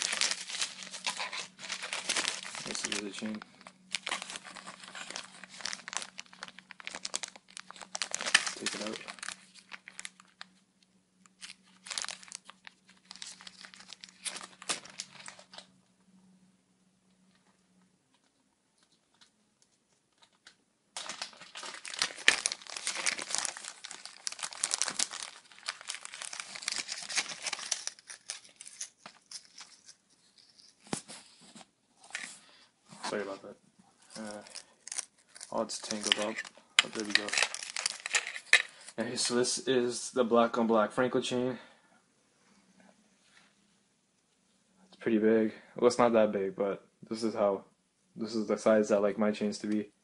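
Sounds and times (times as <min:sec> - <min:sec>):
packaging crinkling and rustling: 0:00.0 - 0:10.6, 0:11.2 - 0:15.8, 0:17.3 - 0:39.6.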